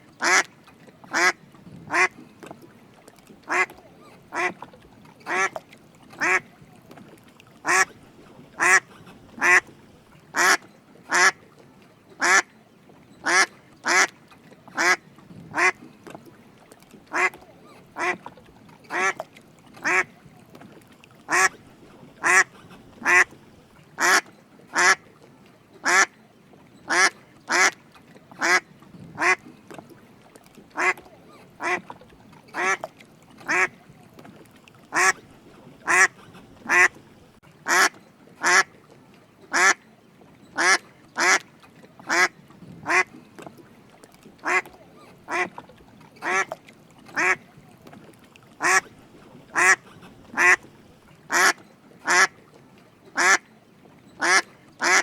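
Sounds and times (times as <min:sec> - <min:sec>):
mallard duck quacking: 0:00.2 - 0:00.5, 0:01.1 - 0:02.2, 0:03.5 - 0:04.6, 0:05.2 - 0:05.6, 0:06.2 - 0:06.5, 0:07.6 - 0:08.0, 0:08.6 - 0:11.4, 0:12.2 - 0:12.5, 0:13.2 - 0:14.1, 0:14.8 - 0:15.8, 0:17.1 - 0:18.3, 0:18.9 - 0:19.2, 0:19.8 - 0:20.1, 0:21.3 - 0:21.6, 0:22.2 - 0:23.4, 0:24.0 - 0:25.0, 0:25.8 - 0:26.1, 0:26.9 - 0:27.8, 0:28.4 - 0:28.6, 0:29.2 - 0:29.4, 0:30.8 - 0:31.9, 0:32.5 - 0:32.9, 0:33.5 - 0:33.8, 0:34.9 - 0:35.2, 0:35.8 - 0:37.0, 0:37.7 - 0:38.7, 0:39.5 - 0:39.8, 0:40.6 - 0:41.4, 0:42.0 - 0:43.1, 0:44.4 - 0:45.6, 0:46.2 - 0:46.6, 0:47.2 - 0:47.4, 0:48.6 - 0:48.9, 0:49.5 - 0:50.7, 0:51.3 - 0:52.4, 0:53.2 - 0:53.4, 0:54.2 - 0:55.0.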